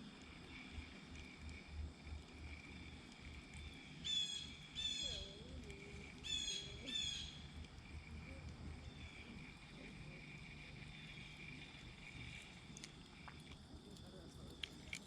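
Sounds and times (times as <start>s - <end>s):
bird calling: 6.2s - 7.4s.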